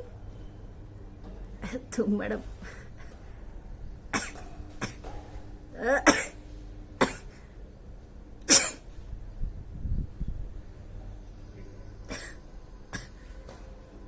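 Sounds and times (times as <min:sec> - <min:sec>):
woman sneezing: 0:08.5 - 0:08.8.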